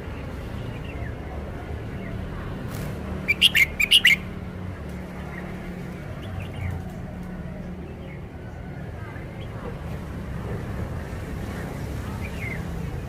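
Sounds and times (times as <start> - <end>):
bird singing sharp notes: 3.3 - 4.3.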